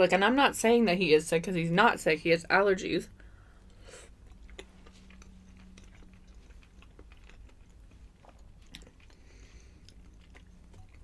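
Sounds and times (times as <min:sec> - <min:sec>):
person chewing: 0:03.6 - 0:11.0.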